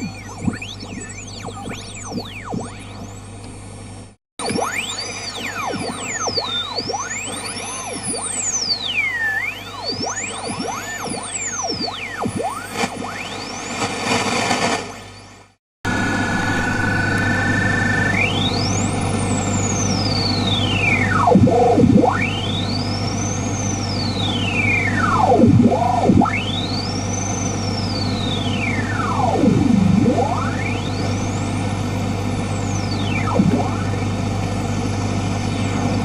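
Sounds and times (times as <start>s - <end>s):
low hum: 0.0s - 8.2s, 15.9s - 36.0s
radio whistling tone over static: 0.0s - 36.0s.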